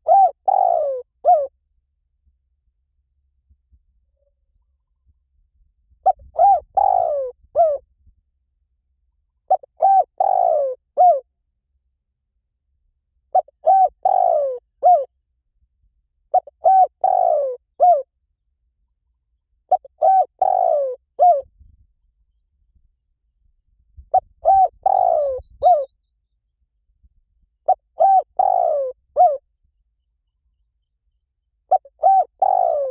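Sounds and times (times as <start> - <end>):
dove cooing: 0.0 - 1.5, 6.0 - 7.8, 9.5 - 11.3, 13.3 - 15.1, 16.3 - 18.1, 19.7 - 21.5, 24.1 - 25.9, 27.6 - 29.4, 31.7 - 32.9.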